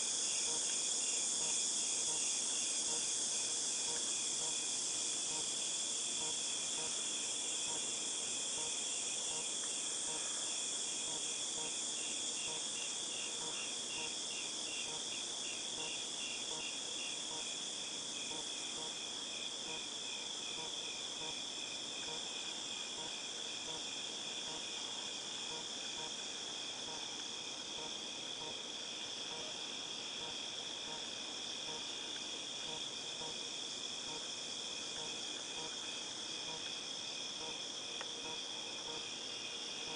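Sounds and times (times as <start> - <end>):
cicadas shrilling: 0.0 - 39.9
fast pulsing insect call: 0.0 - 39.9.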